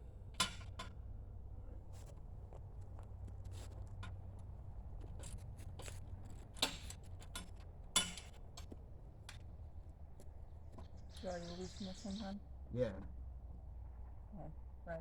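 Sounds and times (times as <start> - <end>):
low steady rumble: 0.0 - 15.0
clicks and taps of gear handled: 5.0 - 9.5.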